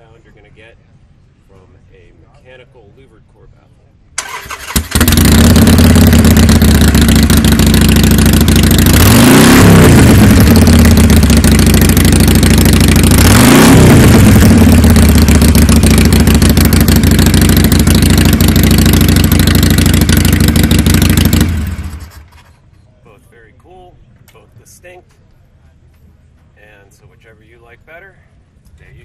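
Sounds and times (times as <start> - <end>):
motorcycle engine revving: 4.2 - 22.5
motorcycle engine idling: 4.2 - 22.7.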